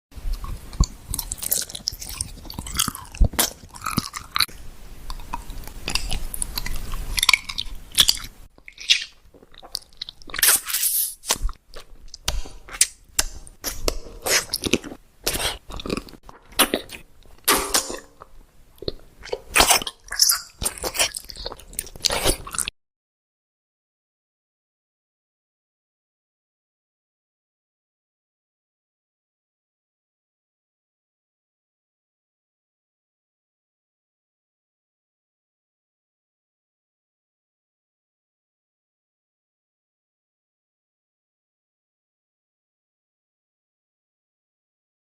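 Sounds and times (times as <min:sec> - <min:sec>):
person chewing fruit: 0:00.3 - 0:22.7.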